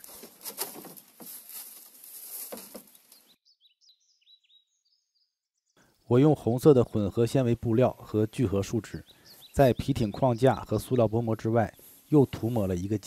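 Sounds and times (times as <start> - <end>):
rustling and crackling: 0.0 - 3.3
small bird chirping: 2.8 - 6.0, 8.4 - 12.7.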